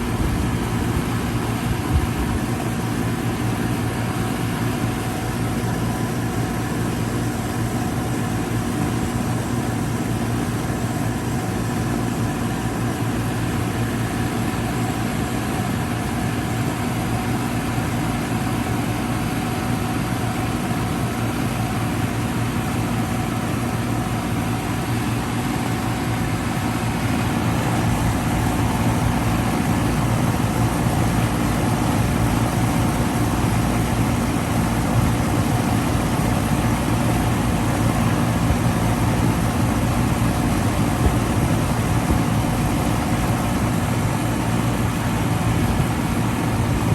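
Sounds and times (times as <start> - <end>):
air conditioner unit humming: 23.3 - 46.9.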